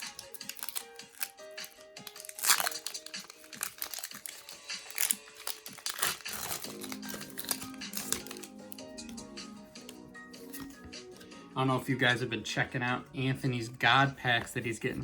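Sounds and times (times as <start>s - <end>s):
foil wrapper crinkling: 0.0s - 9.1s
background music: 0.0s - 15.0s.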